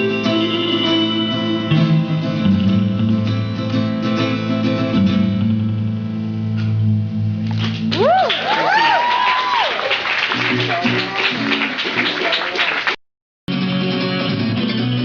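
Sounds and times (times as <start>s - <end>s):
live band playing guitar music: 0.0s - 8.0s, 10.2s - 12.7s, 13.5s - 15.0s
strummed guitar chords: 0.0s - 8.0s, 13.5s - 15.0s.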